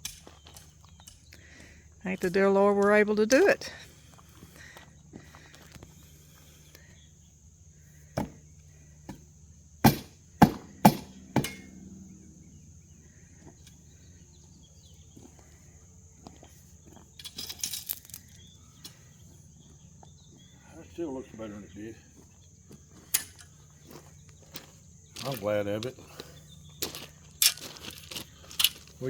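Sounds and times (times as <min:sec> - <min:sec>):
faint high-pitched hum: 0:00.1 - 0:29.0
sharp knocks: 0:09.8 - 0:11.9.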